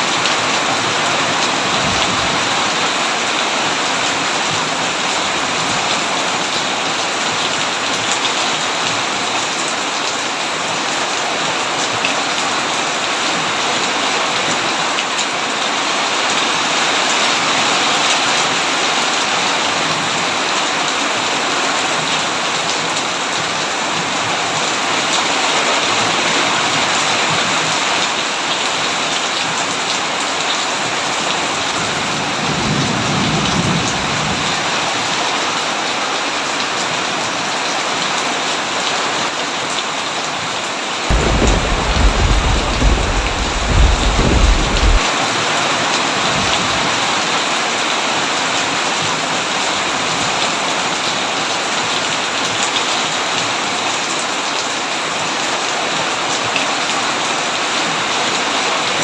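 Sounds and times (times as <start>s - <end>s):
heavy rain: 0.0s - 59.0s
thunder rumble: 41.1s - 45.0s.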